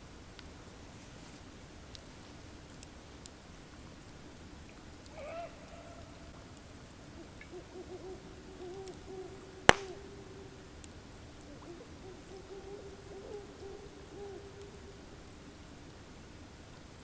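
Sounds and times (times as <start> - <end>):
sharp crack: 9.7 - 10.1.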